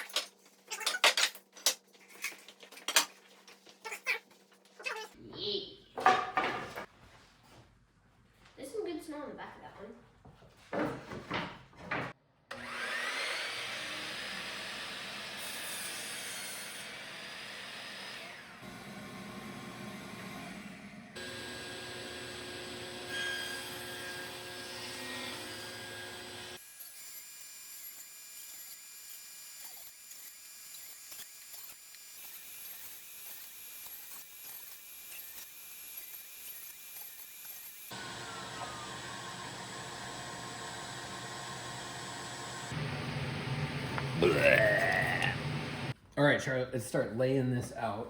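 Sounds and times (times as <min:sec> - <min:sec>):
power tool cutting wood: 0:12.5 - 0:44.2.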